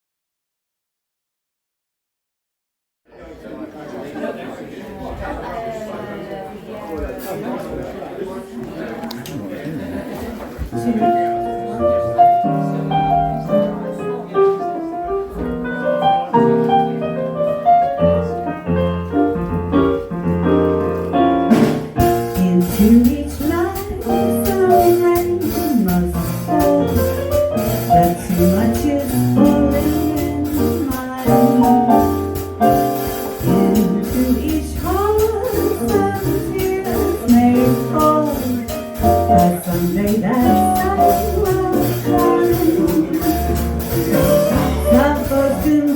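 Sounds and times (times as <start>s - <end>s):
jazz piano: 10.5s - 45.9s
double bass: 10.8s - 14.0s, 15.1s - 45.9s
drums with cymbal: 21.3s - 45.9s.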